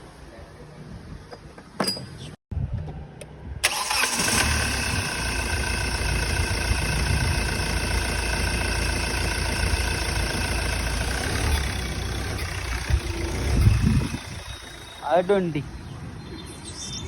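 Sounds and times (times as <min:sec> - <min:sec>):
diesel engine starting and idling: 0:03.6 - 0:15.9.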